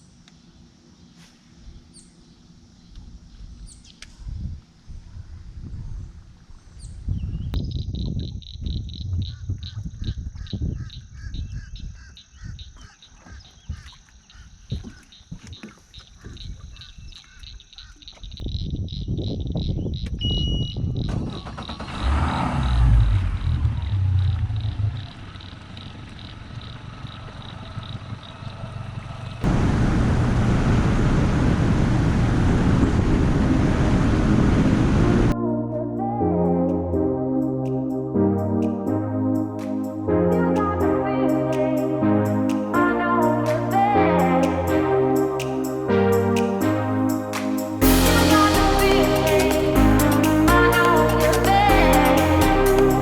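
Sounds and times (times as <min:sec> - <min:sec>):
wind rumble on microphone: 0:02.9 - 0:13.9, 0:18.2 - 0:25.1, 0:29.4 - 0:35.4
wind and water rush: 0:29.4 - 0:35.3.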